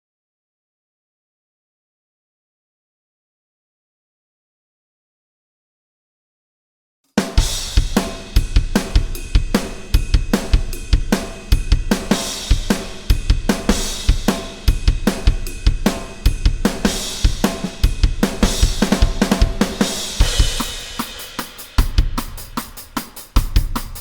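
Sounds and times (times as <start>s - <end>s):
snare drum: 7.2s - 24.0s
kick drum: 7.4s - 20.8s, 21.8s - 22.5s
cymbal crashes: 7.4s - 23.2s
hi-hat: 7.6s - 24.0s.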